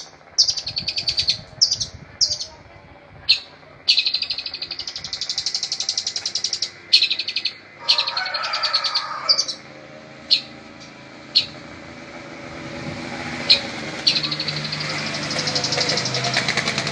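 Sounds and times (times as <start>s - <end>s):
songbird trilling: 0.0s - 2.6s, 3.2s - 11.7s, 13.3s - 16.6s
bird sharp chips: 3.3s - 9.6s, 13.5s - 16.9s.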